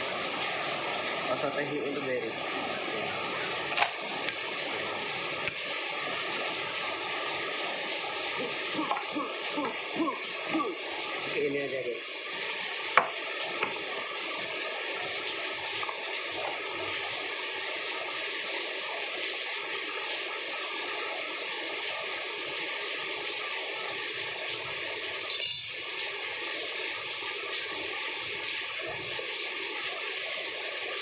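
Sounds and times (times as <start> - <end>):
steady rain: 0.0 - 31.0.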